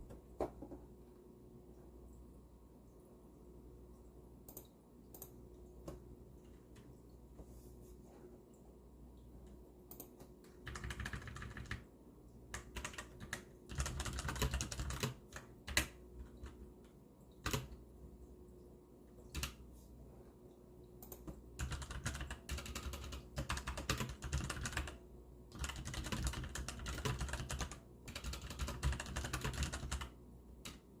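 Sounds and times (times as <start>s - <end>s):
mechanical keyboard typing: 9.9s - 11.9s, 12.5s - 16.6s, 17.4s - 17.8s, 19.3s - 19.6s, 21.0s - 30.9s.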